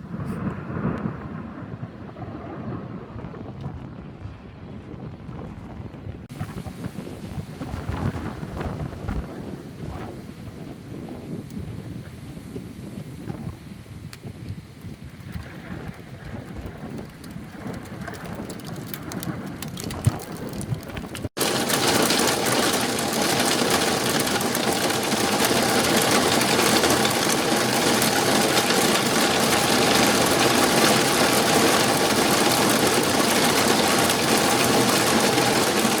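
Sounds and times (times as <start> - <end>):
hailstones ticking: 14.8 - 36.0
hail and heavy rain clattering: 15.3 - 36.0
rain falling: 15.3 - 36.0.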